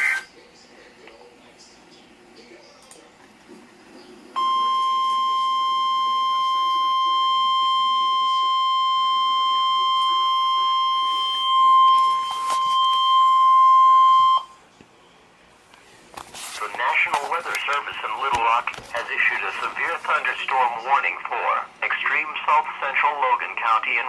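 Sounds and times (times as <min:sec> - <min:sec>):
high warning alarm tone: 0:04.4 - 0:14.6.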